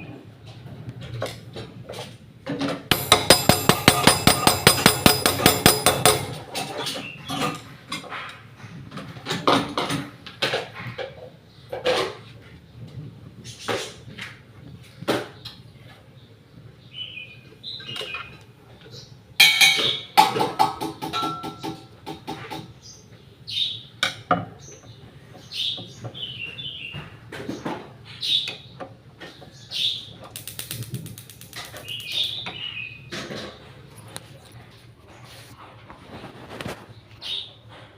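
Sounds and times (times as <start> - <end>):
clicks and knocks: 2.6 - 6.8
metallic clattering with ringing tone: 2.9 - 7.1
birds chirping: 22.8 - 33.6.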